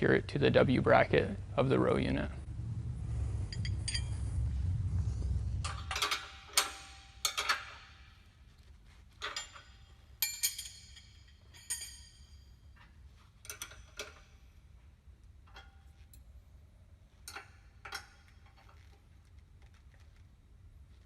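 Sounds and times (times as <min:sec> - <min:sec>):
hand tools clinking on steel: 0:09.1 - 0:14.5.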